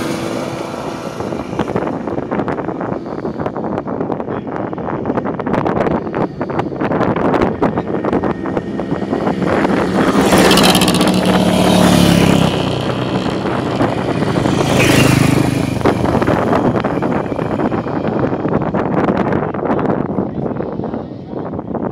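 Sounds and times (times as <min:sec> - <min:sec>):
racing motorcycles passing by: 0:00.0 - 0:03.3, 0:06.0 - 0:20.2
wind buffeting microphone: 0:00.0 - 0:21.9.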